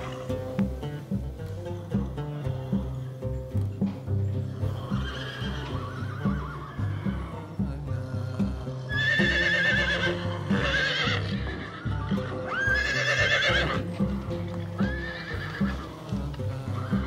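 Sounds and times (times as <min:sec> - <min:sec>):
background music with beat: 0:00.0 - 0:17.0
horses neighing: 0:00.0 - 0:17.0.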